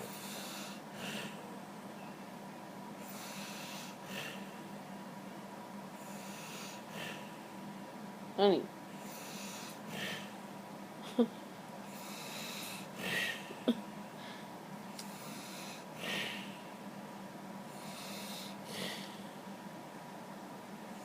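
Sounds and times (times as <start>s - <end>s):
man snoring: 0.0s - 1.4s, 3.0s - 4.4s, 6.0s - 7.2s, 9.0s - 10.3s, 11.9s - 13.5s, 17.7s - 19.1s.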